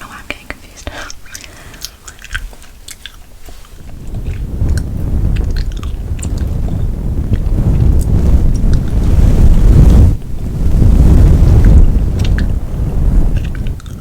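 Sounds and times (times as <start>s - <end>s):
wet mouth clicks: 0.8s - 4.8s, 13.4s - 14.0s
gum chewing: 1.0s - 6.5s, 13.3s - 14.0s
rumbling rub on microphone: 3.4s - 14.0s.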